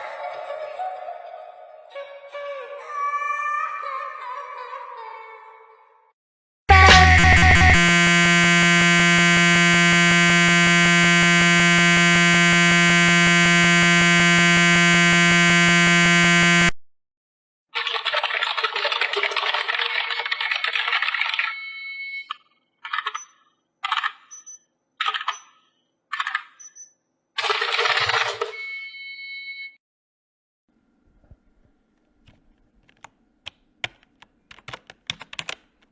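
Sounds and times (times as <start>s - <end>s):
harsh electronic buzzer tone: 6.7s - 16.8s.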